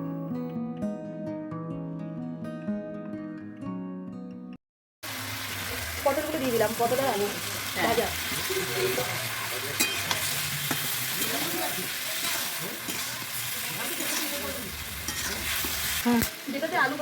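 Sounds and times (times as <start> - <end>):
vegetables sizzling in hot oil: 5.0 - 17.0
spatula scraping a pan: 8.3 - 16.0.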